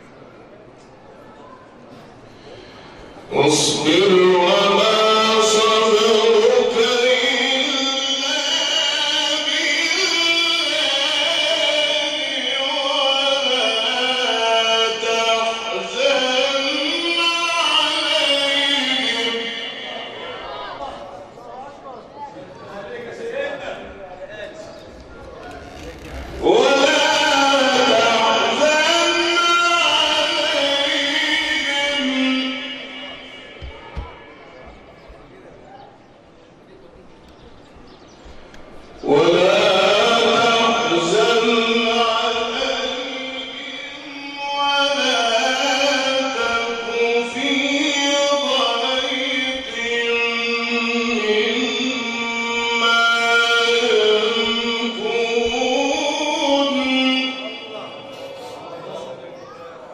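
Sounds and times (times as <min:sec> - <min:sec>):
man chanting a melodic recitation: 0:03.3 - 0:20.3, 0:25.2 - 0:34.9, 0:38.9 - 0:59.6.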